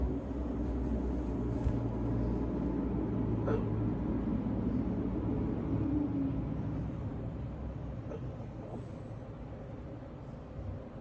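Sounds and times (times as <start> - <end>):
hiccup: 3.4 - 3.7, 8.1 - 8.3.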